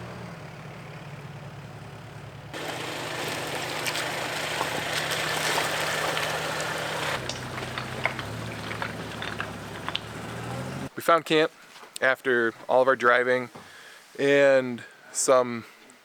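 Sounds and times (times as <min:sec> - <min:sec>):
road and tyre noise: 0:00.0 - 0:10.9
truck engine running: 0:00.0 - 0:10.9.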